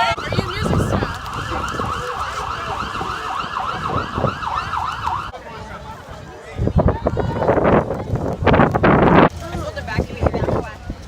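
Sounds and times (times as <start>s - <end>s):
siren yelping warble: 0.0s - 5.3s.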